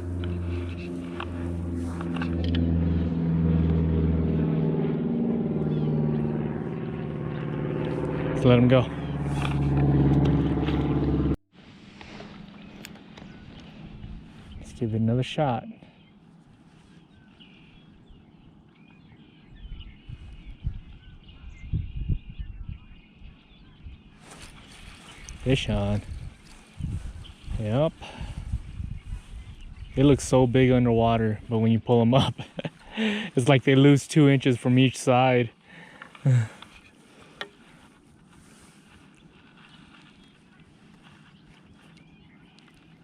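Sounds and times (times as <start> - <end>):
engine running: 0.0 - 15.0, 24.3 - 28.6
small birds chirping: 5.6 - 6.3, 12.1 - 43.0.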